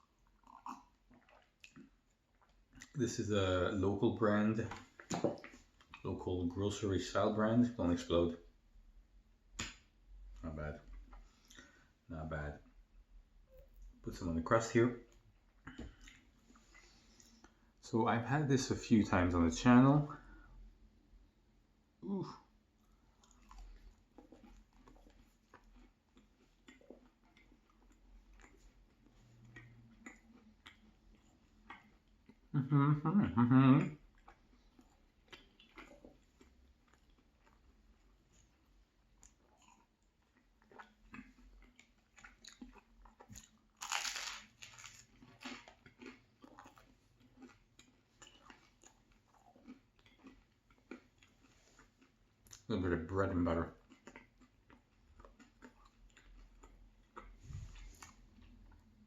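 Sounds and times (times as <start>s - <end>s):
faint chewing: 0.0s - 3.7s, 13.5s - 17.8s, 22.2s - 32.8s, 33.4s - 59.0s
crunchy bite: 42.3s - 47.6s.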